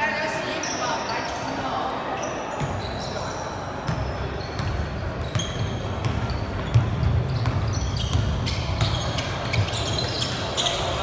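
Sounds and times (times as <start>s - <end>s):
crowd hum in echoing hall: 0.0s - 11.0s
sneakers squeaking: 0.5s - 11.0s
ball bouncing on hardwood court: 3.9s - 10.8s.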